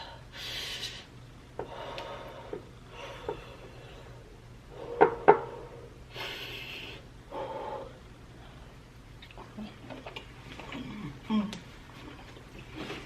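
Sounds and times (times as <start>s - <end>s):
long hissing breath: 1.7s - 8.0s.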